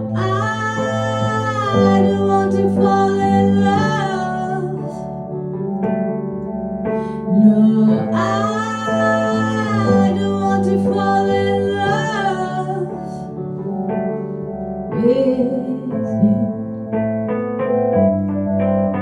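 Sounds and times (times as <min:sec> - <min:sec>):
woman singing a slow ballad: 0:00.0 - 0:05.1, 0:07.0 - 0:13.4, 0:15.0 - 0:16.7.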